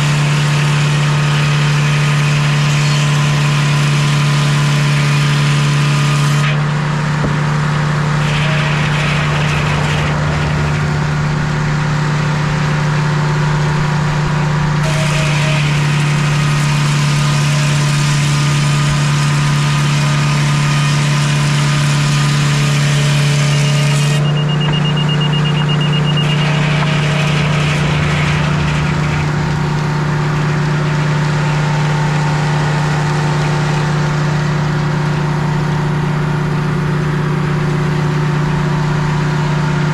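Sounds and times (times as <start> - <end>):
sawmill engine running: 0.0 - 39.9
saw hissing through log: 14.8 - 24.2.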